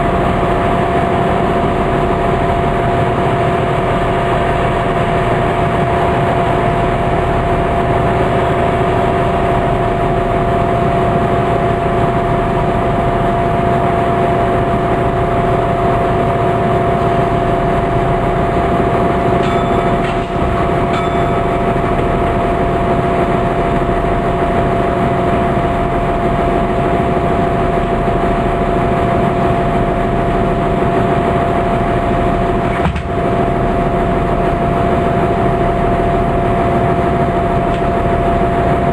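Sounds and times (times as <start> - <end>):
train diesel engine droning: 0.0 - 38.9.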